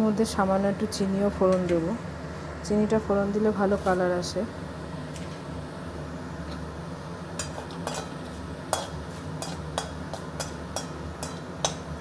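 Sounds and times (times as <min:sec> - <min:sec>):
spices sizzling in oil: 0:00.0 - 0:12.0.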